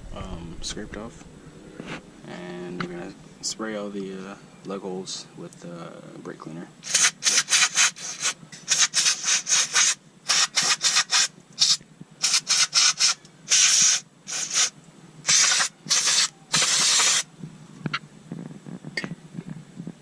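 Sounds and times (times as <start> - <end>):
aerosol spray hissing: 6.8 - 17.3.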